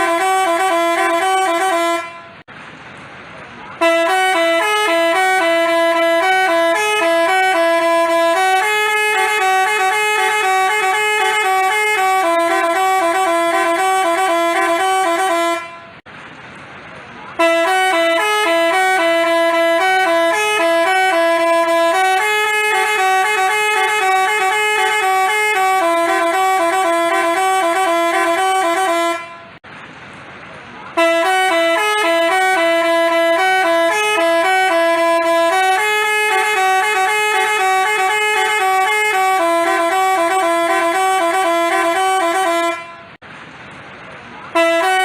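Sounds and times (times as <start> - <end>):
musical bus horn tune: 0.0 - 2.5, 3.8 - 16.1, 17.3 - 29.6, 30.9 - 43.2, 44.5 - 45.0.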